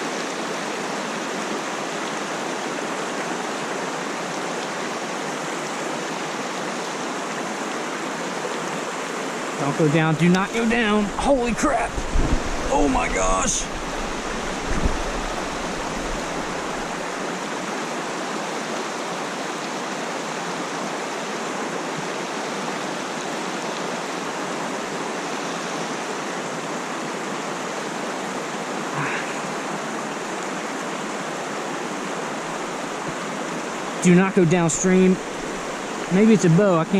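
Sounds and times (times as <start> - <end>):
water rushing over rocks: 0.0 - 36.9.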